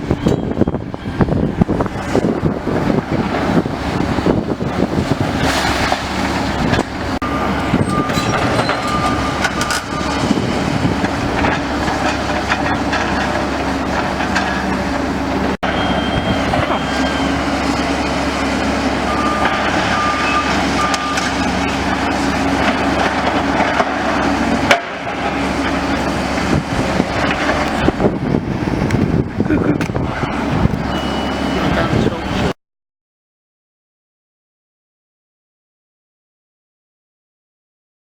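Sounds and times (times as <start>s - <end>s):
excavator engine running: 0.0s - 32.6s
debris crunching and clattering: 4.3s - 15.6s, 18.6s - 28.3s
short beep: 7.2s - 10.3s, 15.6s - 18.0s, 19.1s - 21.4s, 30.9s - 32.5s.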